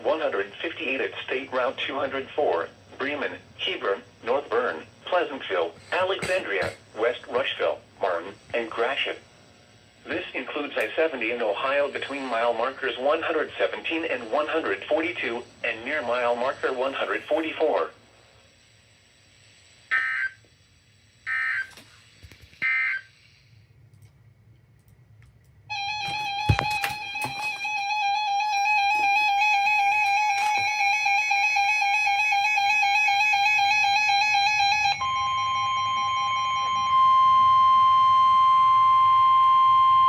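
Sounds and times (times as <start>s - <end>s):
steady warning tone: 0.0s - 40.0s
warbling electronic alarm: 19.9s - 20.4s, 21.2s - 21.8s, 22.6s - 23.5s, 25.7s - 40.0s.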